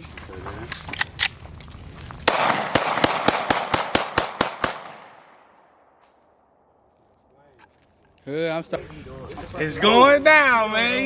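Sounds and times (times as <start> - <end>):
handgun shots: 2.3 - 5.3.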